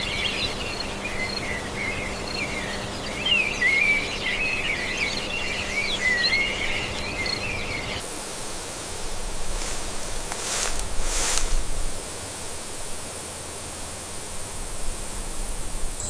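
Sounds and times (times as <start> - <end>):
soft steady hiss: 0.0 - 1.0, 8.0 - 16.0
songbirds chirping and singing: 0.0 - 8.0.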